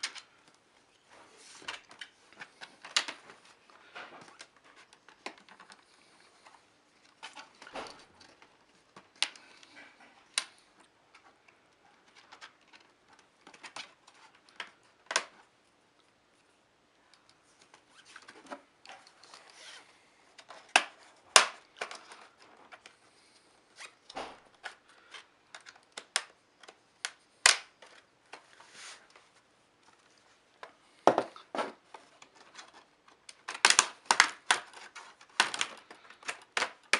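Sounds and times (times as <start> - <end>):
sharp plastic clicks: 33.1 - 36.9.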